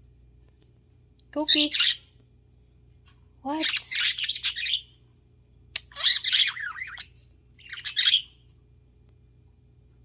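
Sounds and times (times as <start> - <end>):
cockatiel chirping: 3.6 - 4.9, 5.8 - 8.4.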